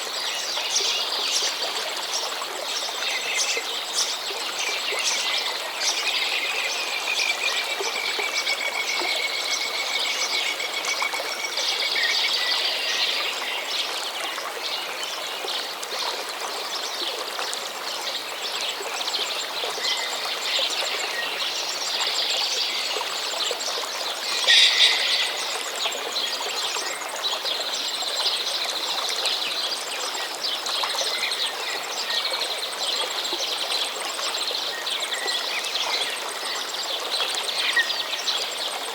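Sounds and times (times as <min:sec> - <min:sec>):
stream running: 0:00.0 - 0:38.9
songbirds singing: 0:19.7 - 0:28.5.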